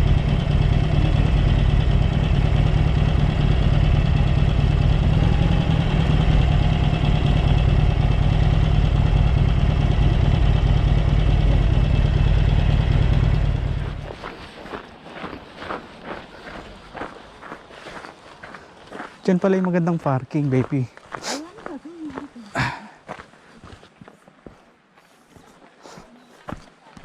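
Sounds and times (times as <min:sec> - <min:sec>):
vehicle engine rumbling: 0:00.0 - 0:20.8.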